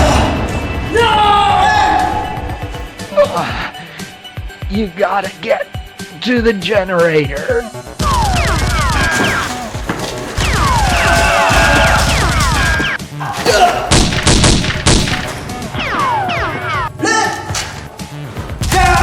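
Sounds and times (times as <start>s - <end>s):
action music: 0.0s - 19.0s
sharp bangs and impacts: 7.9s - 19.0s.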